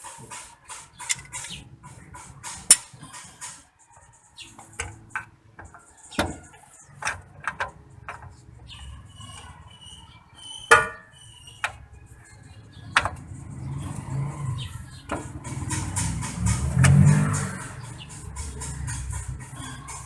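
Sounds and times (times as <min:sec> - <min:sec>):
hand tools clicking on metal: 0:00.0 - 0:08.4, 0:15.1 - 0:20.0
sharp ringing metal clanks: 0:10.4 - 0:11.4.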